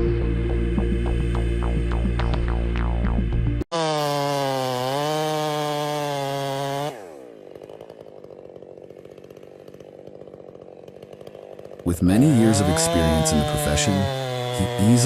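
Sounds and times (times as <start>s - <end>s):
chainsaw revving and idling: 3.6s - 15.0s.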